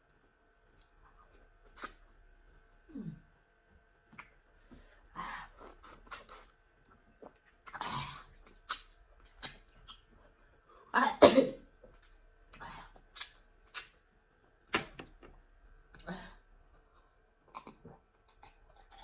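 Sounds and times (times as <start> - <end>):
small mouth clicks: 4.1 - 4.4.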